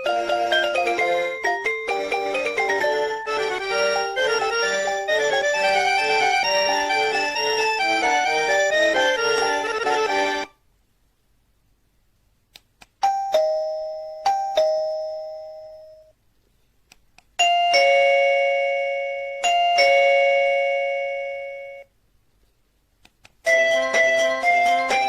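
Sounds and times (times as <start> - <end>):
doorbell ding-dong chime: 13.0 - 16.1, 17.4 - 21.9.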